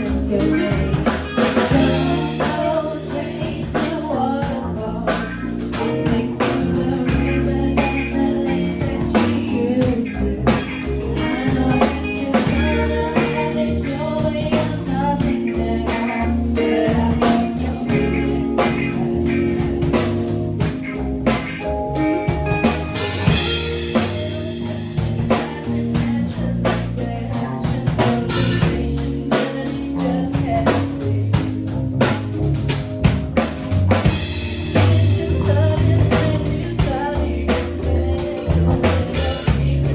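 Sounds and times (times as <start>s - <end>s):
person singing: 0.0s - 21.6s, 23.0s - 31.8s, 34.1s - 39.9s
drum kit beat: 0.0s - 39.9s
guitar: 0.0s - 39.9s.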